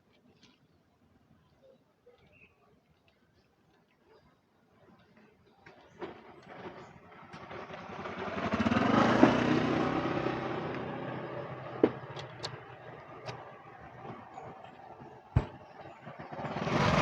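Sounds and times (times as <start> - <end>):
motor vehicle passing: 6.6 - 17.0
sharp clicks and knock: 11.7 - 14.2.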